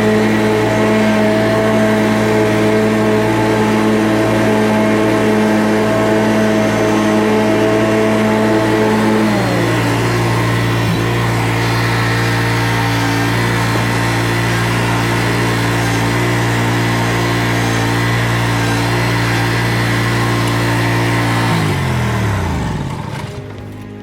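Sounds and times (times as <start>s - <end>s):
engine running: 0.0s - 24.0s.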